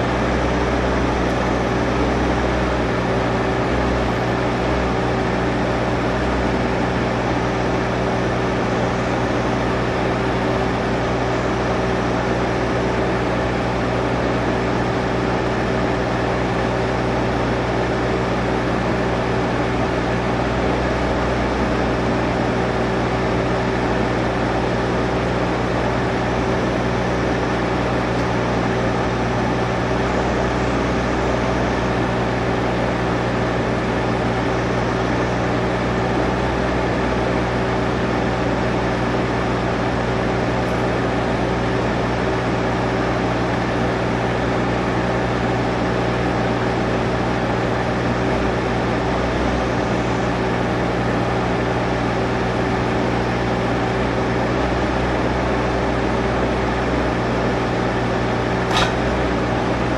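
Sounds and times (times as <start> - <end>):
chainsaw engine drone: 0.0 - 59.9.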